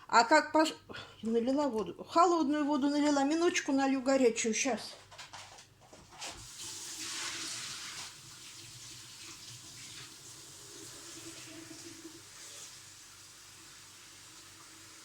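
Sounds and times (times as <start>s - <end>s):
water running and splashing: 6.3s - 15.0s.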